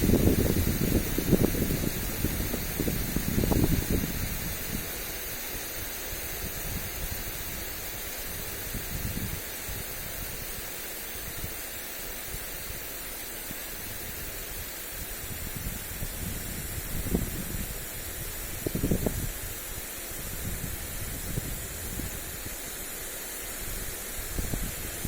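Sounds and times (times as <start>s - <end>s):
wind buffeting microphone: 0.0s - 5.1s, 6.2s - 10.5s, 13.9s - 22.6s, 23.6s - 25.0s
sprinkler spraying water: 0.0s - 25.0s.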